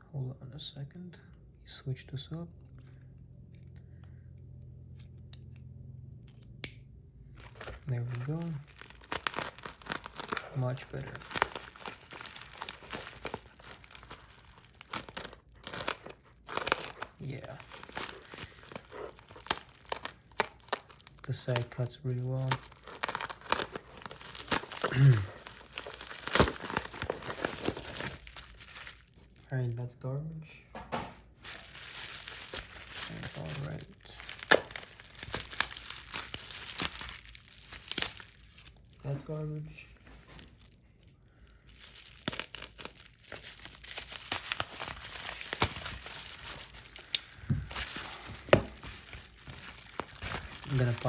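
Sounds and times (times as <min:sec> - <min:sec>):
packaging crinkling and tearing: 0:07.3 - 0:29.4, 0:31.4 - 0:51.0
person humming or grunting: 0:24.8 - 0:25.4.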